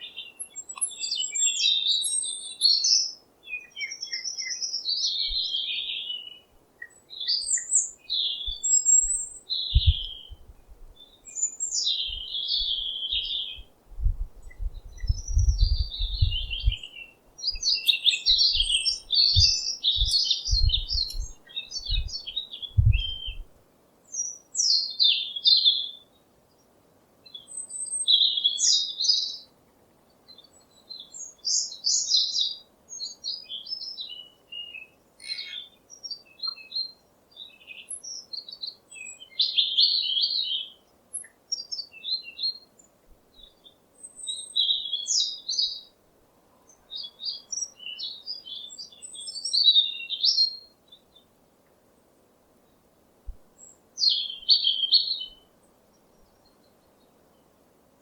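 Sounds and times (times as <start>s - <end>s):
songbirds chirping: 0.0s - 58.0s
low thumps: 13.9s - 16.8s, 22.8s - 23.4s.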